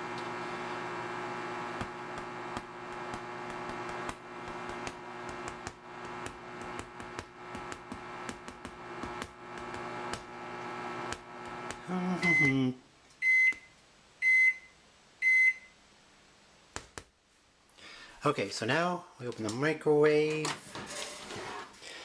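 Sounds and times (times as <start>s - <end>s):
microwave oven humming: 0.0s - 12.7s
food clicking and popping: 1.8s - 10.3s.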